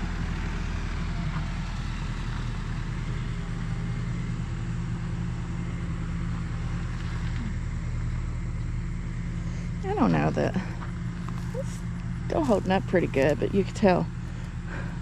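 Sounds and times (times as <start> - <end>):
vehicle engine humming: 0.0 - 15.0.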